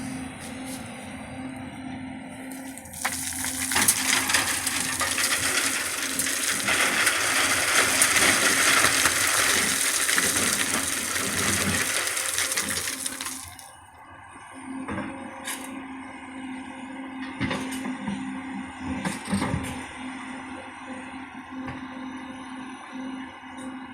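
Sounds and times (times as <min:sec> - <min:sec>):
excavator engine hum: 0:00.0 - 0:13.7
crackling rattling clatter: 0:02.5 - 0:13.7.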